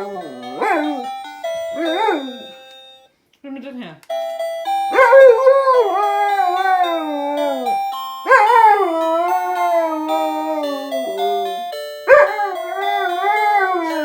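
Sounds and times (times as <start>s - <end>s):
dog howling: 0.0s - 1.0s, 8.3s - 11.5s, 12.1s - 14.0s
electronic doorbell tune: 0.0s - 3.1s, 4.0s - 14.0s.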